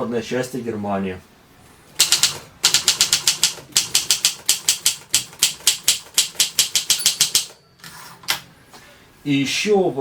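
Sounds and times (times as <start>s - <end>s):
manual typewriter typing: 2.0s - 7.6s.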